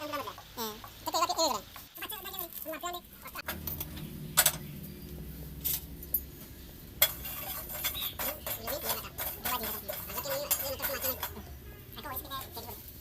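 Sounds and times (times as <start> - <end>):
low steady hum: 0.0 - 13.0
metal utensils clinking on dishes: 7.0 - 12.8.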